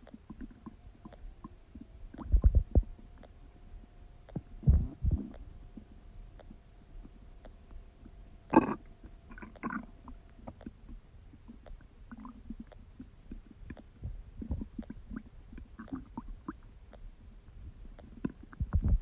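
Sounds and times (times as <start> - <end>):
small pops and bubbling: 0.0 - 3.3, 8.5 - 9.9, 10.5 - 17.0
stomach gurgling: 0.0 - 3.3, 4.3 - 7.2, 8.5 - 19.0.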